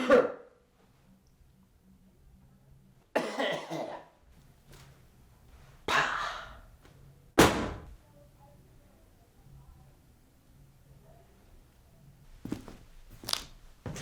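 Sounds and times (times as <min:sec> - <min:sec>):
person coughing: 0:03.2 - 0:04.1.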